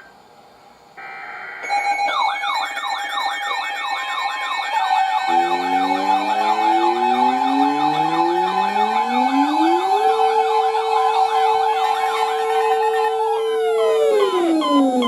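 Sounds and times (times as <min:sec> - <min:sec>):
steady alert tone: 0:01.0 - 0:10.9
electronic siren warble: 0:01.0 - 0:15.0
low siren tones: 0:01.0 - 0:15.0.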